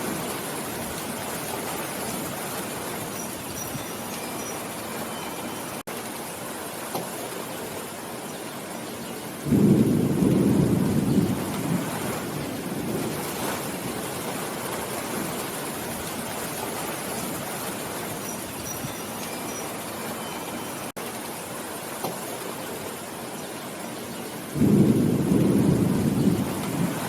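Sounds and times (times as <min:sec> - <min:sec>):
steady rainfall: 0:00.0 - 0:27.0
thunder rumbling: 0:09.4 - 0:18.2, 0:24.5 - 0:27.0.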